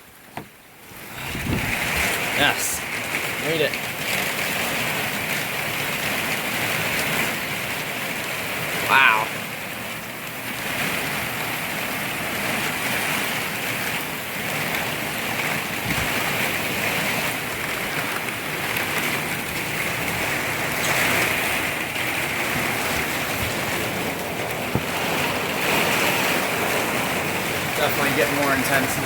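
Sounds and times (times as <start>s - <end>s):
heavy rain: 0.0s - 29.0s.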